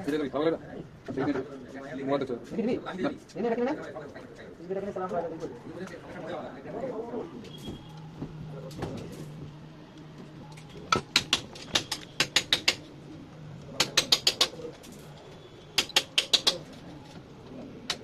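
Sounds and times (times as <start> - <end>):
runs of sharp clicks: 13.6 - 16.9.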